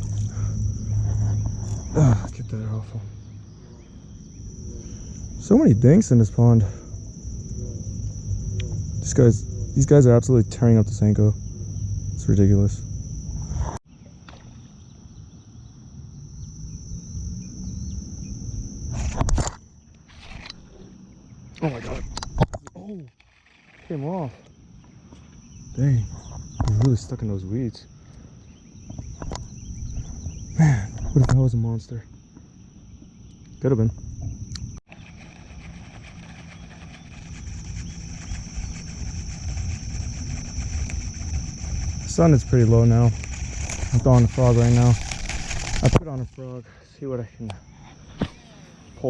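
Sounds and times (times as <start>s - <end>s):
low rumble: 0.0s - 13.7s
crickets chirping: 0.0s - 49.0s
high-pitched insect chorus: 0.0s - 49.0s.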